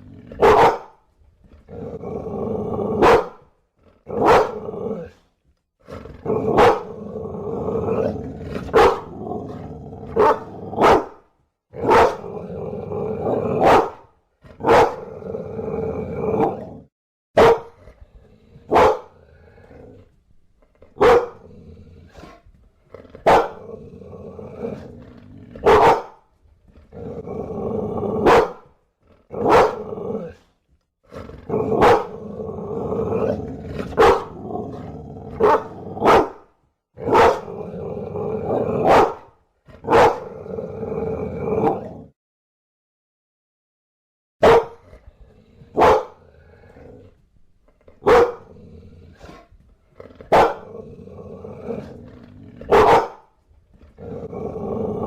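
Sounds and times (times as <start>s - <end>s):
dog growling: 0.0s - 11.2s, 11.8s - 16.9s, 17.7s - 36.4s, 37.0s - 39.0s, 39.7s - 42.2s, 44.7s - 55.0s
dog barking: 0.4s - 1.0s, 3.0s - 3.5s, 4.1s - 4.6s, 6.5s - 7.0s, 8.6s - 9.1s, 10.1s - 11.2s, 11.8s - 12.3s, 13.6s - 15.1s, 17.4s - 17.8s, 18.7s - 19.2s, 21.0s - 21.4s, 23.2s - 23.6s, 25.6s - 26.2s, 28.2s - 28.7s, 29.4s - 29.9s, 31.6s - 32.2s, 33.9s - 34.4s, 35.4s - 37.5s, 38.8s - 40.3s, 44.4s - 44.8s, 45.7s - 46.2s, 48.0s - 48.5s, 50.3s - 50.7s, 52.7s - 53.3s.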